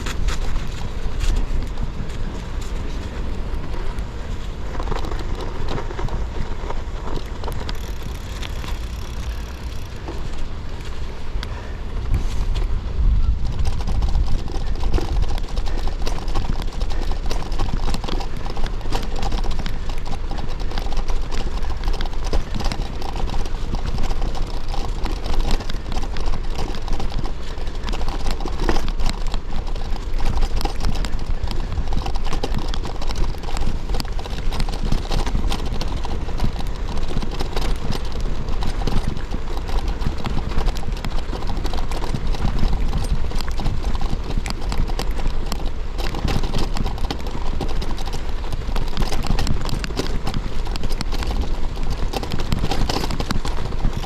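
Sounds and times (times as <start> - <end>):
bike tyres crunching on snow: 0.0 - 54.0.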